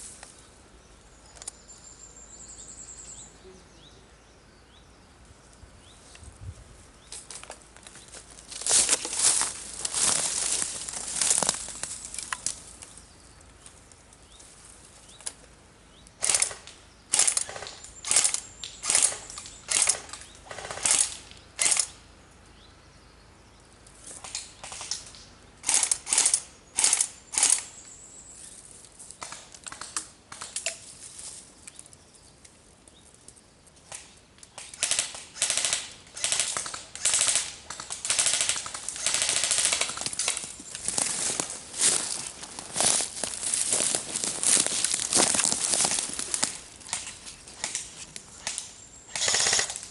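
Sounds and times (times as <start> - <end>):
airsoft guns firing: 16.2 - 21.9, 34.7 - 40.4, 49.1 - 49.9.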